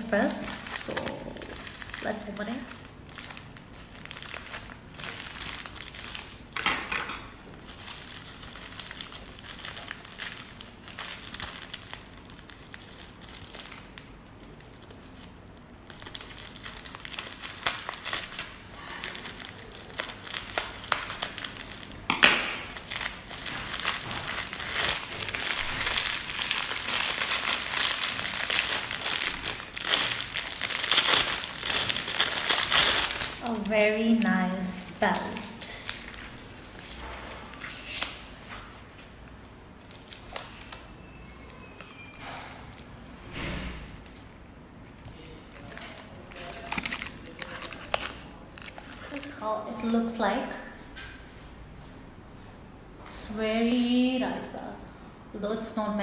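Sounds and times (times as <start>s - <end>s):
packaging crinkling and rustling: 0.0s - 49.5s
sharp packaging cracks: 7.7s - 34.3s, 35.2s - 38.3s, 39.8s - 49.3s.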